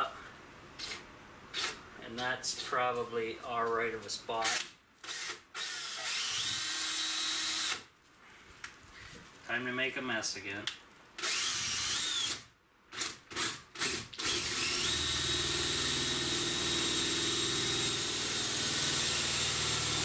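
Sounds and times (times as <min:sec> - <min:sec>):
power drill boring through plywood: 0:05.1 - 0:07.8, 0:11.2 - 0:12.4, 0:13.0 - 0:20.0.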